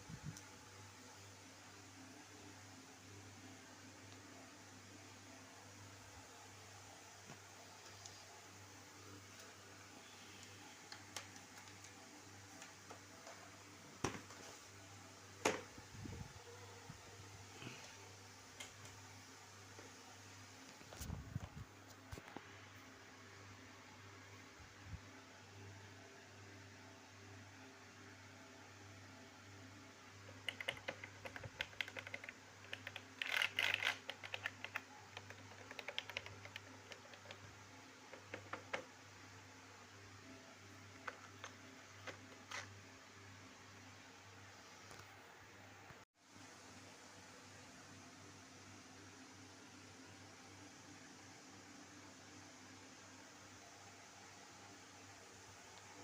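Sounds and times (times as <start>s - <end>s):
faint low hum: 0.0s - 56.0s
rapid light clicks and taps: 10.4s - 13.4s, 30.3s - 38.9s.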